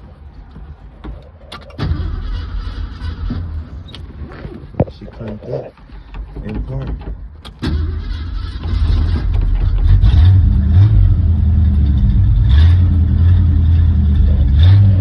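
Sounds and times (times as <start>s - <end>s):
car engine revving: 1.7s - 4.6s, 7.6s - 15.0s.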